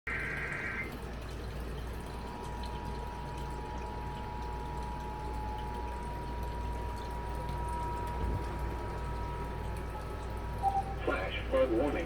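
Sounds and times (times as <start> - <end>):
two-note electronic tone: 10.6 - 11.0.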